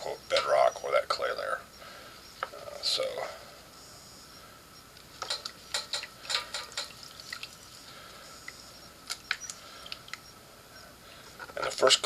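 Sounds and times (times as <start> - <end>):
faint steady hum: 0.0 - 12.0
small objects clicking and tapping: 5.2 - 7.5, 8.5 - 10.2.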